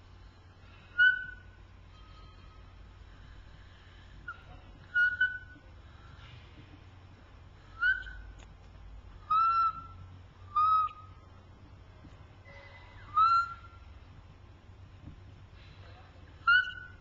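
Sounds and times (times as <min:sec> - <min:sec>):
high-pitched squeaks: 0:12.4 - 0:13.9.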